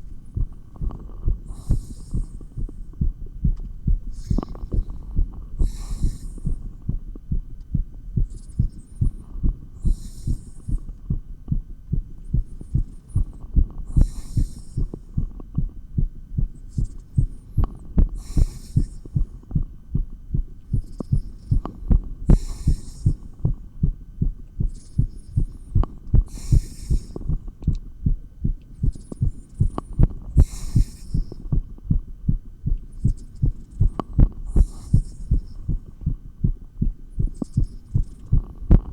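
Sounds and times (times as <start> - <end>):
fast heartbeat through stethoscope: 0.0 - 38.9.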